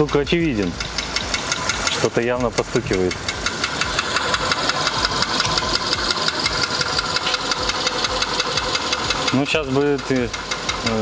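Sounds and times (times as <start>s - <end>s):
car engine idling: 0.0s - 11.0s
rapid engine knock: 0.0s - 11.0s.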